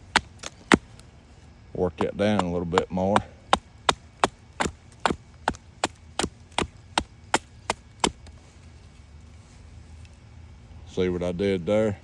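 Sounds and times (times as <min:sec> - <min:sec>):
hatchet chopping wood: 0:00.0 - 0:01.0, 0:02.0 - 0:08.3.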